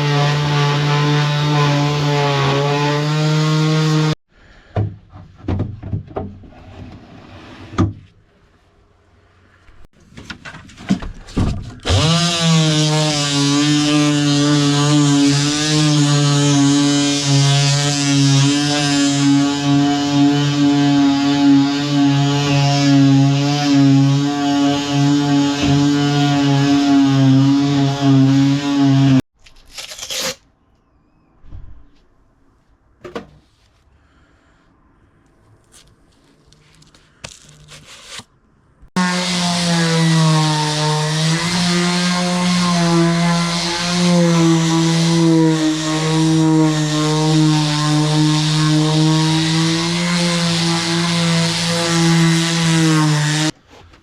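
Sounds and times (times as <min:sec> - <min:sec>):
electric power tool running on wood: 0:39.0 - 0:53.5.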